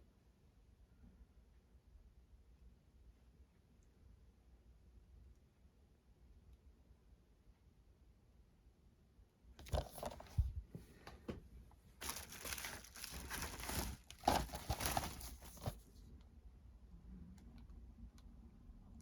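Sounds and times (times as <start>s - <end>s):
packaging crinkling: 9.6s - 10.6s, 12.0s - 15.8s.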